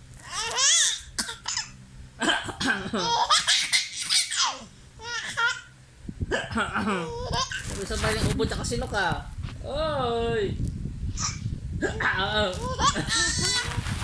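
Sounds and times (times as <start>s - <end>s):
baby laughing: 0.3s - 1.7s, 2.8s - 5.7s, 6.8s - 7.6s, 11.2s - 13.8s.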